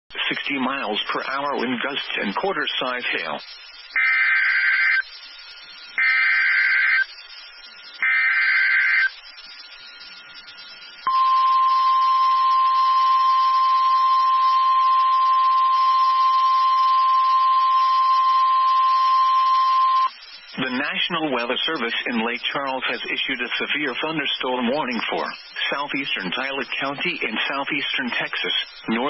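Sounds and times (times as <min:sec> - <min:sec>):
digital data bursts: 0:00.2 - 0:29.0
steady alarm tone: 0:02.5 - 0:22.3.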